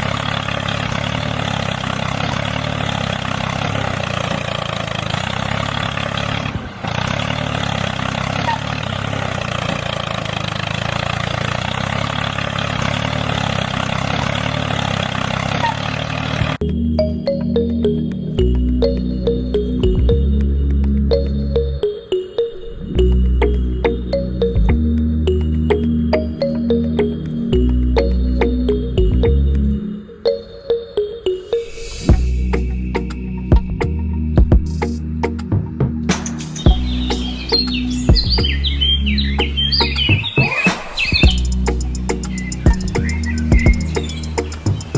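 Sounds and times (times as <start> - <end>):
held bass note: 31.8 - 35.4, 36.4 - 40.2, 41.2 - 44.9
sharp percussive hits: 36.1 - 37.4
motor humming with hiss: 40.7 - 44.9.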